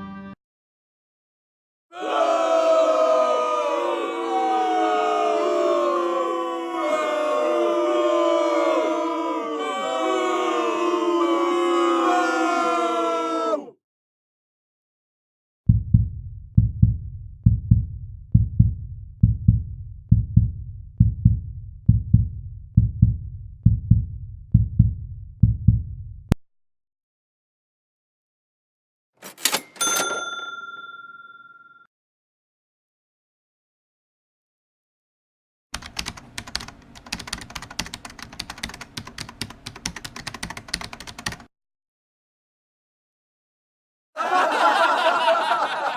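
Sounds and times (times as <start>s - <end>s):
heartbeat thumps: 15.7s - 26.4s
fast typing on keyboard: 35.8s - 41.5s.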